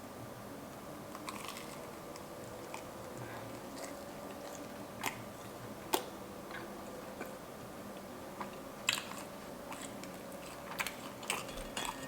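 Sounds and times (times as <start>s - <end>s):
person chewing: 8.0s - 12.0s.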